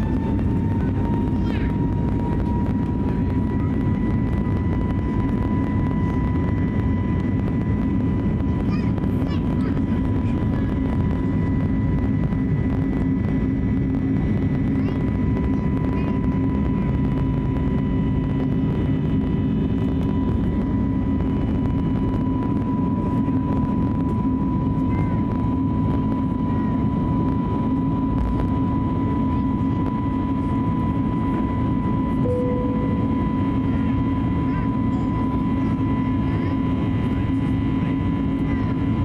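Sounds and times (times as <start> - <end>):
airplane cabin rumble: 0.0 - 39.0
constant engine whine: 0.0 - 39.0.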